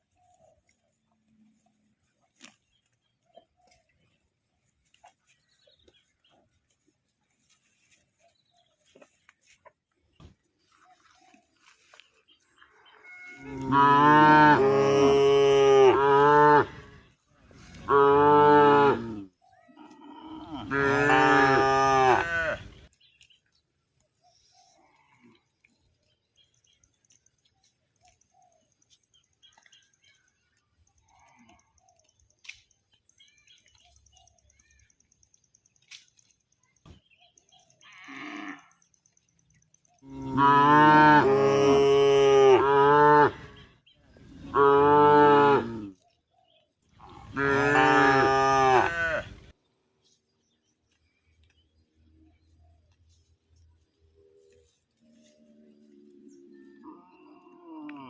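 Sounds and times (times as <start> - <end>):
cow mooing: 13.1 - 17.0, 17.8 - 22.7, 37.9 - 38.7, 40.0 - 43.6, 44.4 - 46.0, 47.0 - 49.4.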